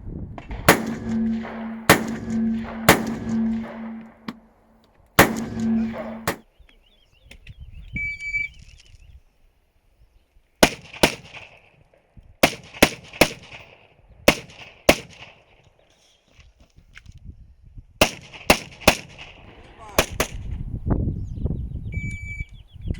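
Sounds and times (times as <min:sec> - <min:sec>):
rifle shots: 0:00.4 - 0:04.6, 0:05.2 - 0:06.5, 0:10.6 - 0:11.7, 0:12.4 - 0:15.6, 0:18.0 - 0:20.5.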